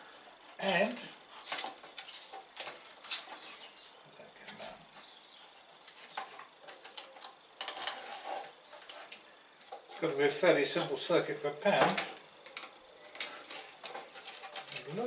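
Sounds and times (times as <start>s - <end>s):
plastic clatter: 5.8s - 10.1s, 11.8s - 15.0s.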